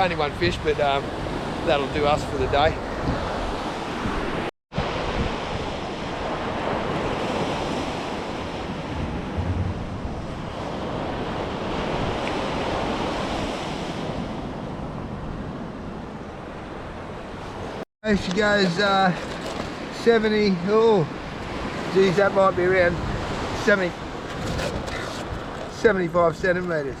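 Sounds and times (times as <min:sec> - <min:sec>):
wind buffeting microphone: 0:00.0 - 0:17.8, 0:20.8 - 0:27.0
ocean surf washing onto beach: 0:16.5 - 0:27.0.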